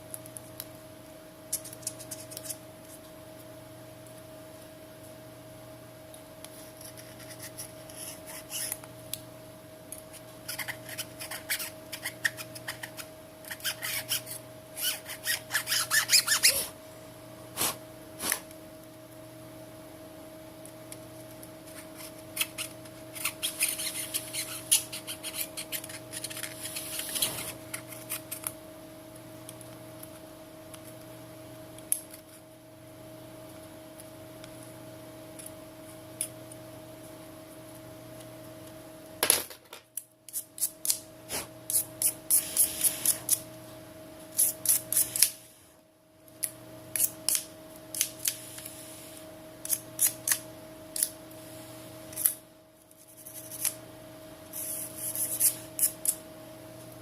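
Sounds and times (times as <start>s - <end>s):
faint steady hum: 0.0s - 57.0s
scratchy scraping and rubbing: 21.7s - 28.4s, 54.5s - 56.1s.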